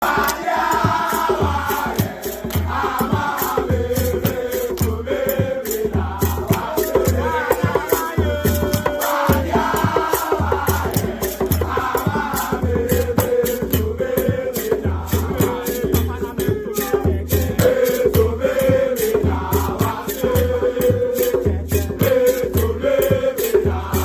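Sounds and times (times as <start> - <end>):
shakers rattling: 0.0 - 24.0
voices singing: 0.0 - 24.0.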